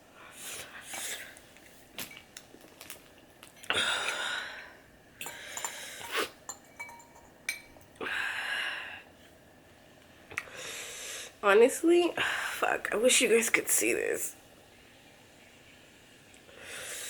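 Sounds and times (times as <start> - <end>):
utensil clinking against bowl: 5.2 - 7.9.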